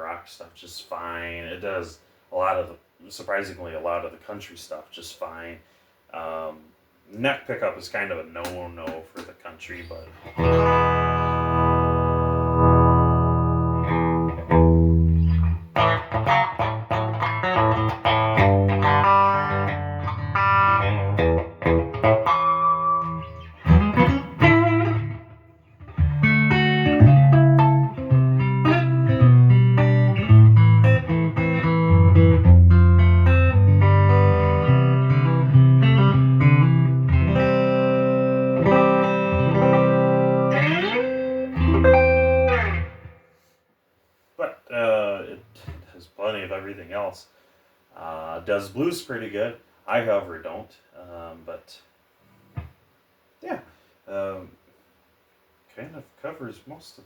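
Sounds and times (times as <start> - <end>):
electric guitar notes and chords: 10.2 - 43.3.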